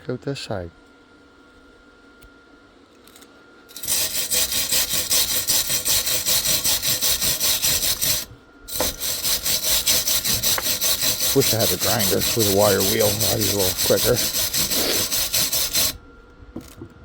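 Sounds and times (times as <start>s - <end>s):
wire brush scrubbing steel: 3.7s - 16.0s.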